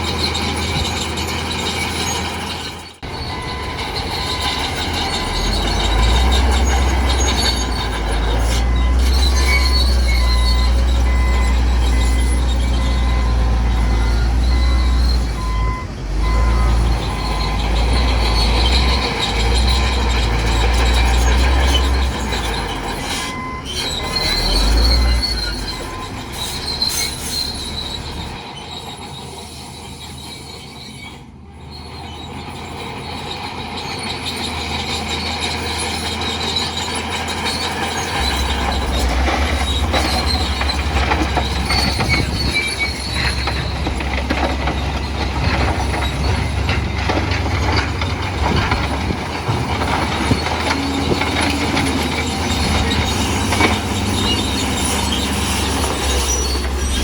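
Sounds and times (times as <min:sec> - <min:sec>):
diesel engine drone: 0:00.0 - 0:30.1, 0:31.0 - 0:57.0
bulldozer tracks squealing and clanking: 0:00.0 - 0:57.0.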